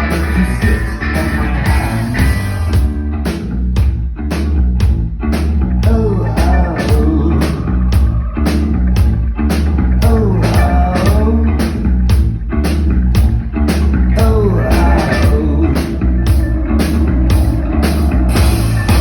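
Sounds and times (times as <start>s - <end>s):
drum beat: 0.0s - 11.3s, 12.1s - 19.0s
live rock band playing: 0.0s - 19.0s.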